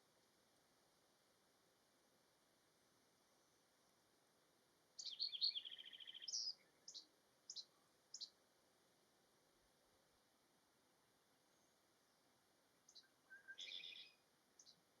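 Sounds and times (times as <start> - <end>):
bird chattering and trilling: 12.9 - 14.8.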